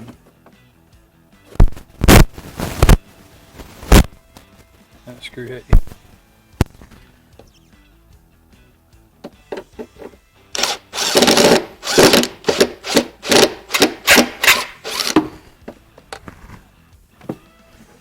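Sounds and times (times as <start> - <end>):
trim scraping and rubbing: 9.9 - 15.5.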